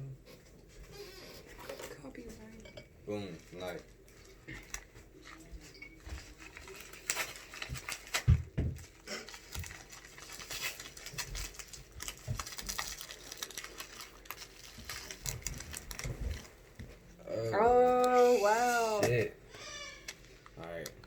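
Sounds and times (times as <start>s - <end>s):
packaging rustling: 3.6s - 16.9s.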